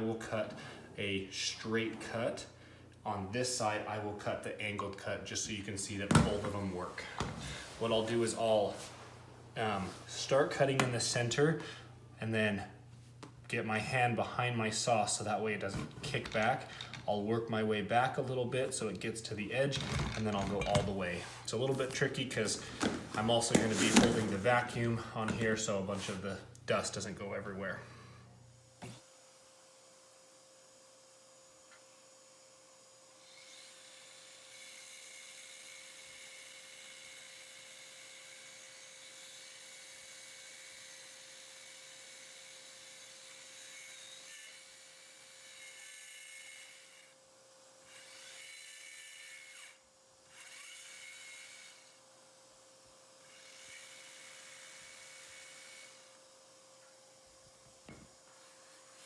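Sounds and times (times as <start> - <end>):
vacuum hum: 0.0 - 29.2
power saw high whine: 30.3 - 47.2, 53.2 - 56.2.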